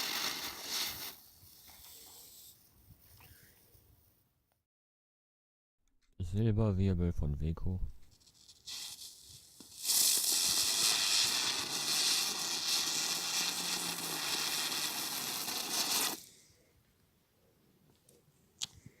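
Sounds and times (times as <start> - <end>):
spinner firework hissing: 0.0 - 3.2, 8.1 - 16.3.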